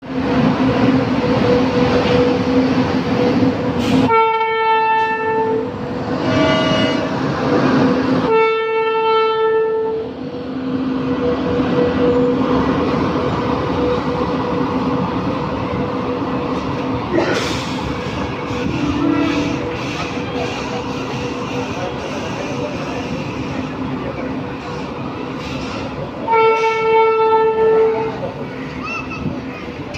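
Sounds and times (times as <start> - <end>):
train rumble and hum: 0.0 - 29.9
train horn blasts: 3.9 - 7.2, 8.2 - 10.1, 18.6 - 19.7, 26.2 - 28.2.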